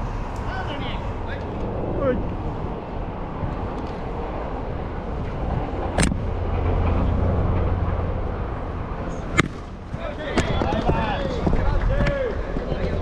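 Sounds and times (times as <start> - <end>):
steady low rumble: 0.0 - 13.0
sharp smacks: 6.0 - 6.2, 9.3 - 9.7.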